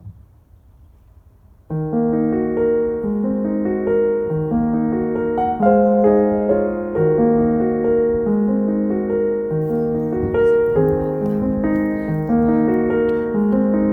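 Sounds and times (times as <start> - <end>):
calm piano piece: 0.0 - 13.9.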